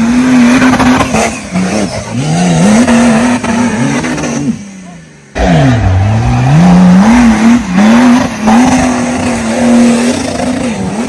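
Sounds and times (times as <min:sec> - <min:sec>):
off-road vehicle engine revving: 0:00.0 - 0:11.0
tyre and terrain noise: 0:00.0 - 0:11.0.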